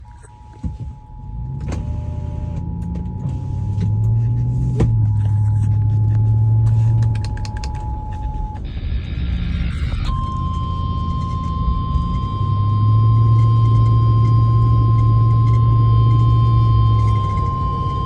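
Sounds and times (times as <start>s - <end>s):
low rumble with crackles: 0.0s - 18.0s
two-tone alert signal: 7.6s - 18.0s.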